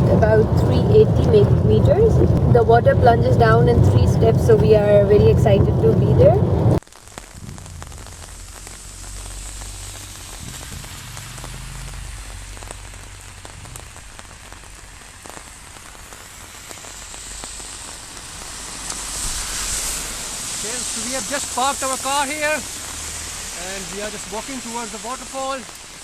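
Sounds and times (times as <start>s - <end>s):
steady low hum: 0.0s - 15.4s
heavy rain falling: 0.0s - 26.0s.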